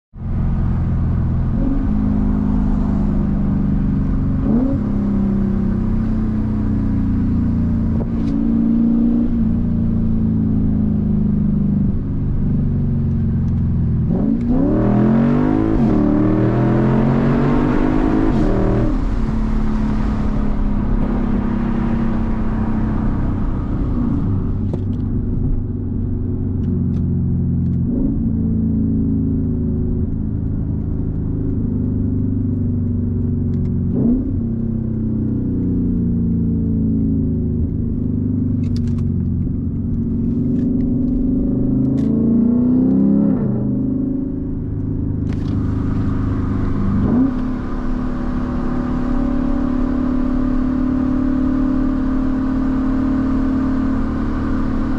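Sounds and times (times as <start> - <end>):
car engine revving through gears: 0.2 - 54.9.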